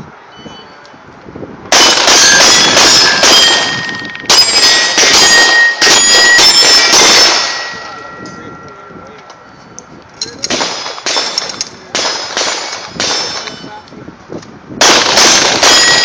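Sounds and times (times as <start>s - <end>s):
pistol shots: 1.7s - 7.9s, 10.4s - 13.6s, 14.8s - 16.0s
steel targets ringing: 1.7s - 13.8s, 14.9s - 16.0s.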